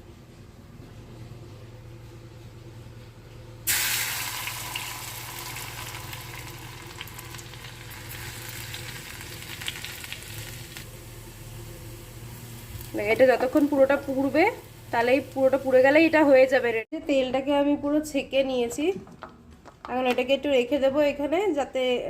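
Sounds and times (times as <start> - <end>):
seeds sizzling in hot oil: 3.7 - 16.6.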